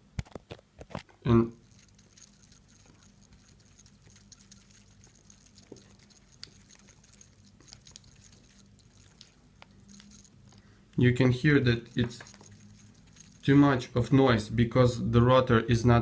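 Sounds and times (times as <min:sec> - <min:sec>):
watch rotor clicking and rattling: 0:01.6 - 0:10.6, 0:11.8 - 0:13.9.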